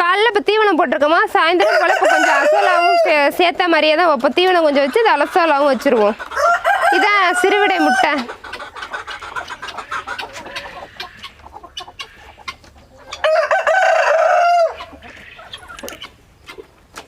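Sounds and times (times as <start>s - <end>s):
rooster crowing: 1.6s - 3.3s, 6.4s - 8.2s, 13.1s - 15.0s
chickens clucking softly: 1.6s - 17.0s.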